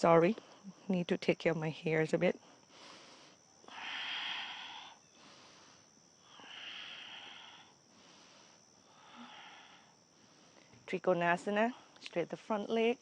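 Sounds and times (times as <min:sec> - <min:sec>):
woman breathing deeply: 0:02.4 - 0:10.8.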